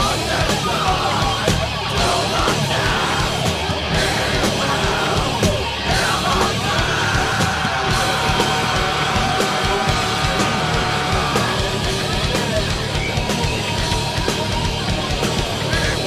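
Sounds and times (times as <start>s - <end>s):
bass: 0.0s - 16.0s
distorted guitars: 0.0s - 16.0s
drums: 0.0s - 16.0s
person yelling vocals: 4.3s - 11.8s.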